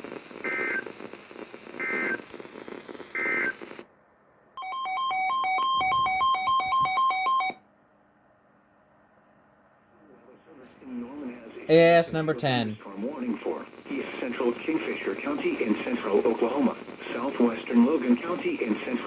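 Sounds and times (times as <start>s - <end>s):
radio hiss: 0.0s - 3.8s, 10.0s - 19.0s.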